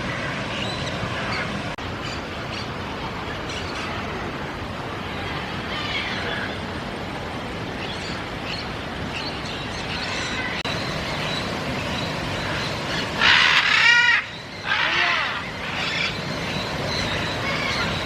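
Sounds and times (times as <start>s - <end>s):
birds calling: 7.7s - 18.0s
harsh bird squawks: 12.9s - 16.2s.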